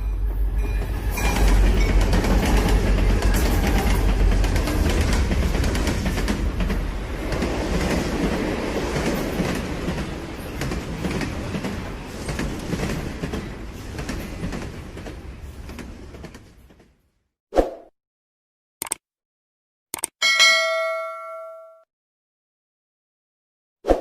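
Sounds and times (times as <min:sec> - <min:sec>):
train wheels clicking on rails: 0:00.2 - 0:17.0.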